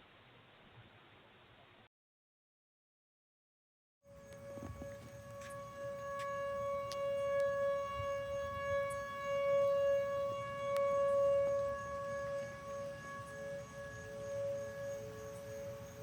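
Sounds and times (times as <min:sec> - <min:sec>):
lower-pitched siren tone: 0:04.0 - 0:16.0
tornado warning siren: 0:04.0 - 0:16.0.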